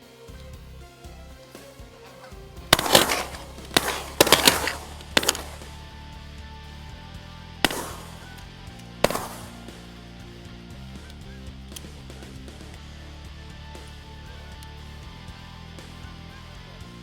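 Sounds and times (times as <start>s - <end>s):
shotgun shots with echo: 2.1s - 6.0s, 7.6s - 10.0s.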